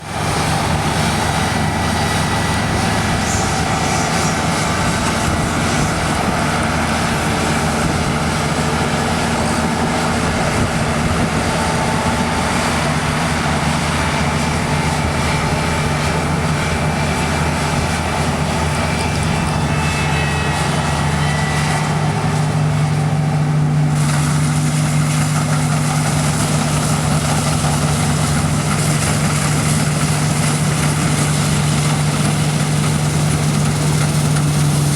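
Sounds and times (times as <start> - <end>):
combine harvester engine drone: 0.0 - 34.9.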